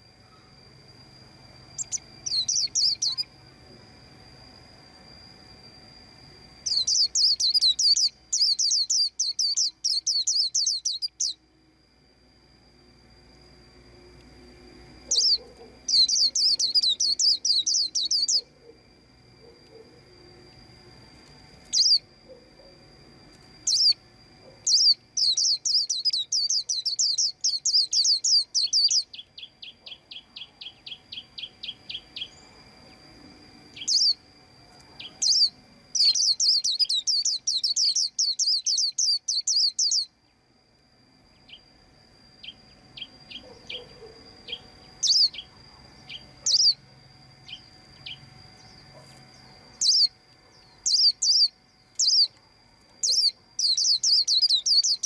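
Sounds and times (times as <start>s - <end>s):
faint steady high tone: 0.0s - 55.0s
bird chirping: 1.7s - 3.3s, 6.6s - 11.4s, 15.0s - 18.8s, 21.6s - 22.7s, 23.6s - 33.0s, 33.7s - 34.2s, 34.9s - 40.4s, 42.4s - 46.8s, 47.4s - 52.4s, 53.0s - 55.0s
rapid chattering bird trills: 15.1s - 18.6s, 49.7s - 50.1s, 53.0s - 55.0s.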